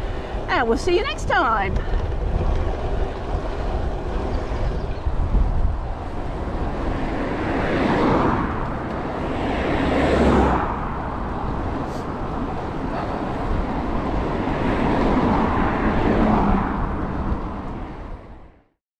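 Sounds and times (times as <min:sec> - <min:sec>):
vehicles passing: 0:00.0 - 0:18.6
wind rumble on microphone: 0:00.0 - 0:18.6
road traffic noise: 0:00.0 - 0:18.7.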